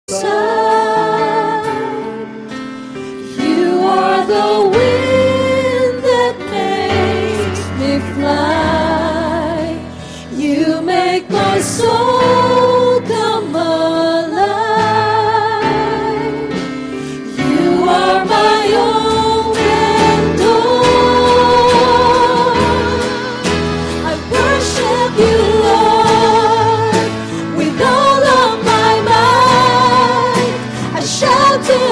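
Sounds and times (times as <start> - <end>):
sustained instrumental accompaniment: 15.0 - 31.9
person singing with vibrato: 17.2 - 31.9.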